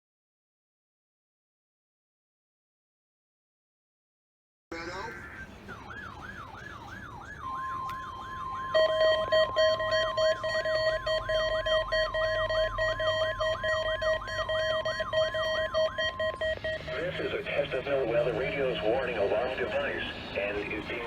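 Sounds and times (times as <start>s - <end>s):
warbling siren: 5.0s - 21.0s
lower pulsing alarm tone: 5.2s - 21.0s
steady warning alarm tone: 5.2s - 21.0s.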